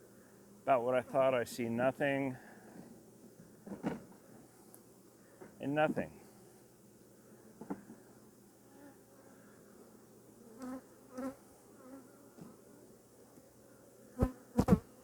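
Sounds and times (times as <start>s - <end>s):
bee flying past: 7.3s - 15.0s.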